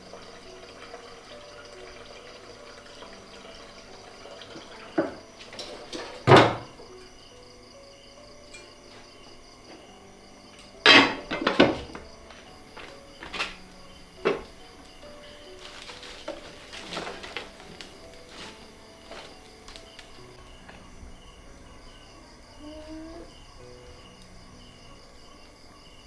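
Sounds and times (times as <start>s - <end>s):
kitchenware knocking: 5.0s - 6.8s.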